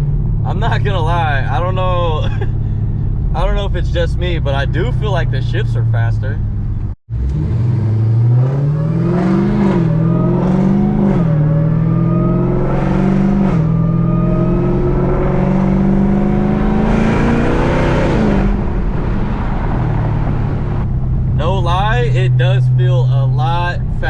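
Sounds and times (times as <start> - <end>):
car engine accelerating: 0.0 - 24.0.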